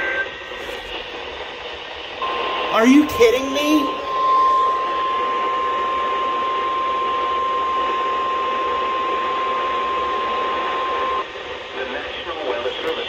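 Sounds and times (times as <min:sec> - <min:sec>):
radio static hiss: 0:00.0 - 0:13.0
steady alarm beep: 0:02.2 - 0:11.2.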